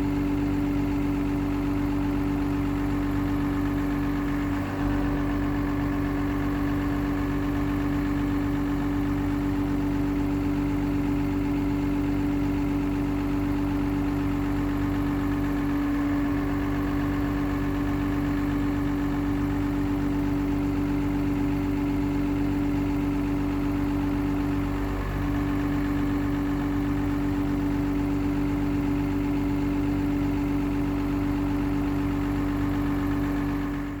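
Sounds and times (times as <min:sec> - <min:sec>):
diesel engine idling: 0:00.2 - 0:34.0
strong steady hum: 0:02.0 - 0:09.7.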